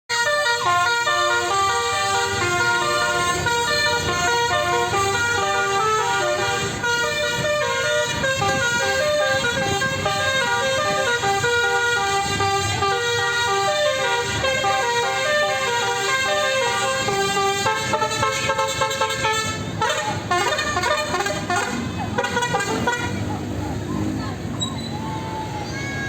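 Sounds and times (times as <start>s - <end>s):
multi-tone bus horn melody: 0.1s - 23.6s.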